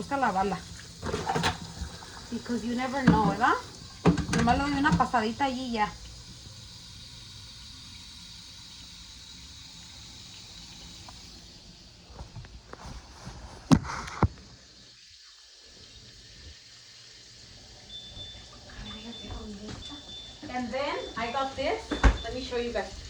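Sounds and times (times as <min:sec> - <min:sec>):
water running at a sink: 0:00.0 - 0:23.0
knocks and clunks of handled things: 0:04.0 - 0:05.1.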